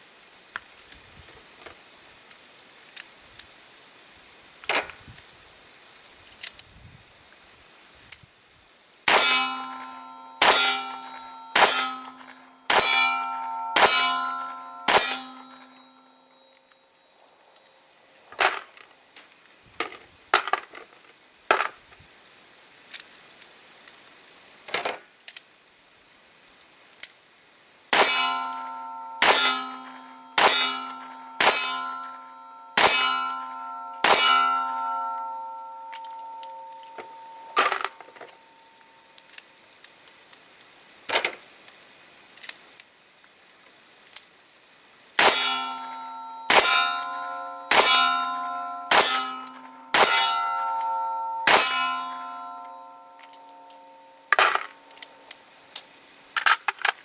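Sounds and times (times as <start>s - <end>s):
metallic ring: 9.1s - 18.4s, 28.0s - 39.2s, 45.2s - 55.3s.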